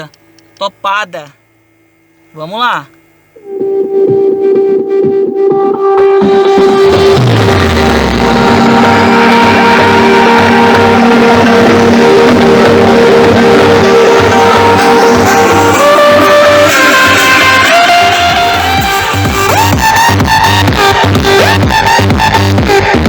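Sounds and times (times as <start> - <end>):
electronic dance music: 2.4 - 23.0
deep bass sweep: 3.4 - 23.0.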